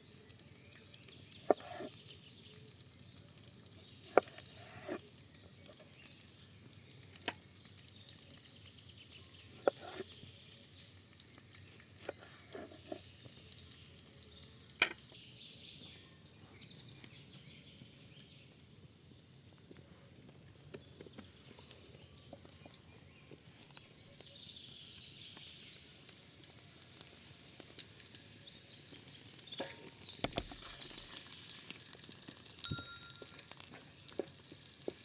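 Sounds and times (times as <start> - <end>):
birds chirping: 20.7 - 26.6, 27.8 - 34.3.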